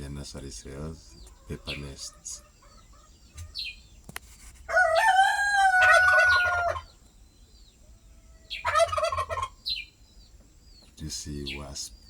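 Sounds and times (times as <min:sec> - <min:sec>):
high bird chirp: 0:00.4 - 0:04.4, 0:06.2 - 0:12.0
rooster crowing: 0:04.7 - 0:06.9.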